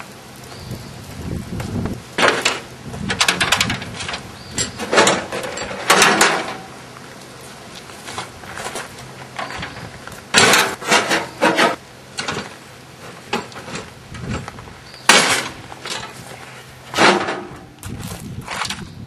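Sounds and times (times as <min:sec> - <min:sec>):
loud knocks and clanks: 0:02.2 - 0:06.7, 0:10.3 - 0:12.5, 0:15.1 - 0:16.2, 0:17.0 - 0:17.7
scraping and rattling: 0:02.2 - 0:06.7, 0:08.0 - 0:18.9.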